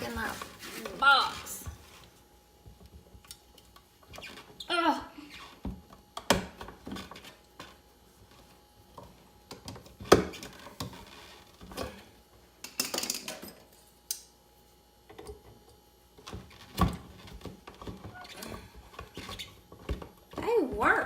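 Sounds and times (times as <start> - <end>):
scraping rustle: 0.0 - 2.0.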